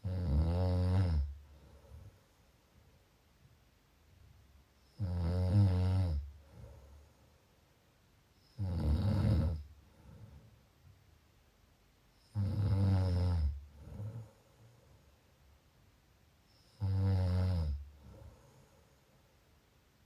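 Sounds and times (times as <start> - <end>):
person snoring: 0.0 - 1.4, 5.0 - 6.7, 8.6 - 10.2, 12.2 - 14.4, 16.7 - 18.4
faint breath: 1.4 - 3.1, 6.4 - 7.6, 9.8 - 10.7, 17.9 - 19.5.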